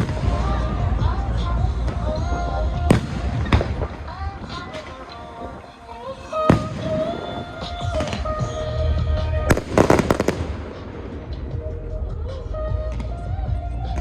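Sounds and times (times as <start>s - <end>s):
fireworks bangs and crackling: 0.0s - 1.2s, 1.8s - 8.8s, 9.4s - 11.7s
music playing: 0.0s - 14.0s.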